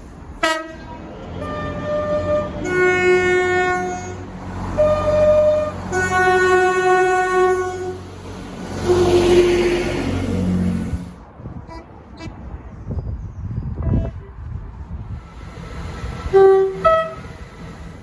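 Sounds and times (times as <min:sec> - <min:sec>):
train two-tone horn: 0:00.4 - 0:08.1, 0:08.8 - 0:11.0, 0:16.3 - 0:17.4.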